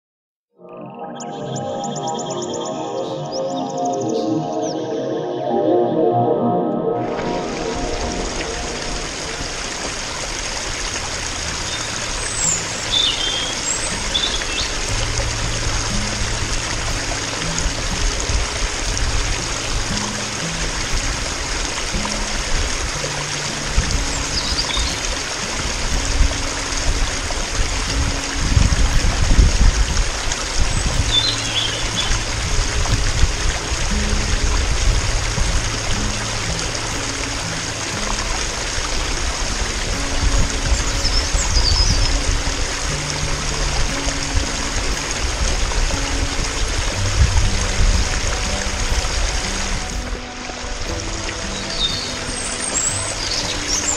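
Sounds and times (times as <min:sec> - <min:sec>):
soft background music: 0:00.6 - 0:53.9
high bird chirps: 0:00.9 - 0:05.0, 0:11.6 - 0:14.9, 0:30.7 - 0:32.3
stream trickling: 0:06.5 - 0:53.9.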